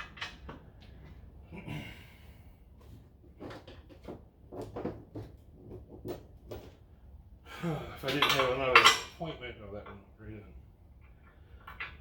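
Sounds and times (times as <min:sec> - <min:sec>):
metal bolts and nuts clinking: 0:08.0 - 0:10.0.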